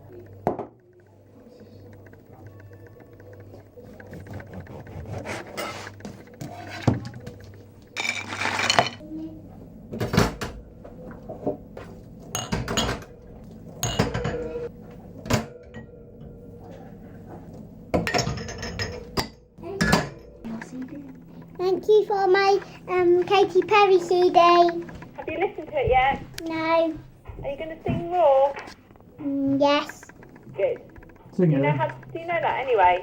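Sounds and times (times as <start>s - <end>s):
cutlery and crockery clinking: 8.0s - 9.0s, 12.3s - 13.1s, 13.8s - 14.7s, 18.0s - 21.0s.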